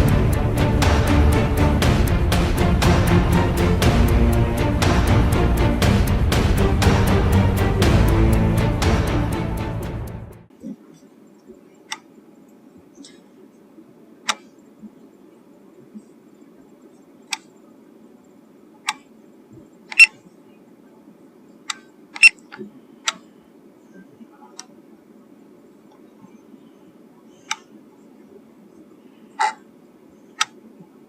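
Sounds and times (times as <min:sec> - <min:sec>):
steady low hum: 0:00.0 - 0:31.0
sharp clicks: 0:14.3 - 0:14.5, 0:17.3 - 0:17.5, 0:19.9 - 0:20.2, 0:21.7 - 0:23.2, 0:27.5 - 0:27.7, 0:30.4 - 0:30.6.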